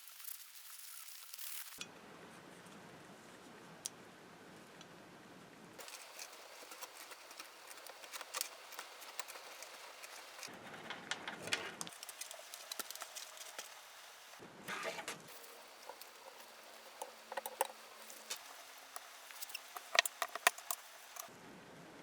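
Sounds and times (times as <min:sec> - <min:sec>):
metal parts clicking and tapping: 0:05.8 - 0:14.4, 0:15.3 - 0:21.3
soft rubbing: 0:05.8 - 0:14.4, 0:15.3 - 0:21.3.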